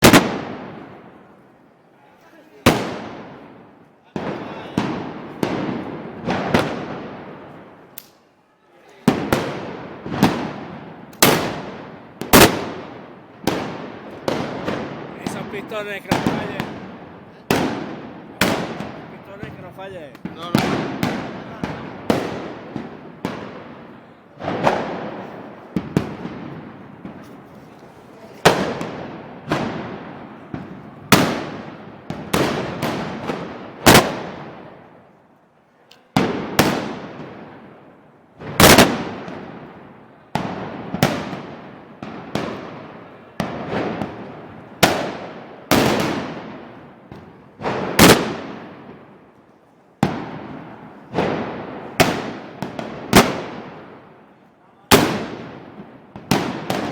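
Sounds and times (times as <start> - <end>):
black-powder guns firing: 0.0 - 1.0, 9.1 - 27.3, 28.4 - 34.7, 38.5 - 39.7, 43.4 - 46.6, 47.6 - 49.0, 50.0 - 54.0, 54.9 - 56.9.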